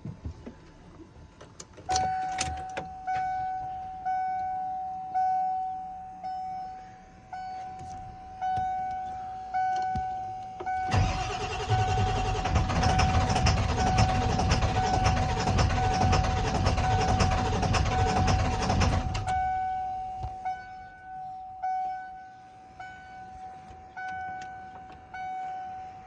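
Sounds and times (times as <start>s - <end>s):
truck warning chime dinging: 1.8s - 26.0s
diesel engine cranking and starting: 10.8s - 20.3s.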